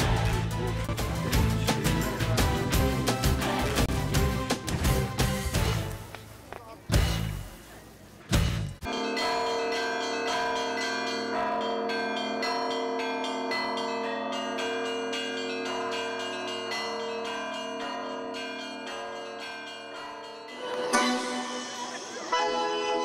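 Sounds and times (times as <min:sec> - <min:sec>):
bells ringing: 0:08.8 - 0:23.0.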